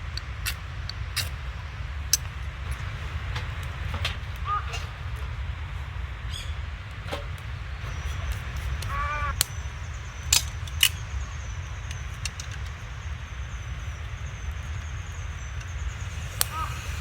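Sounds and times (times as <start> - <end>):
steady low rumble: 0.0 - 17.0
crow cawing: 4.4 - 5.0, 8.8 - 9.4, 16.4 - 17.0.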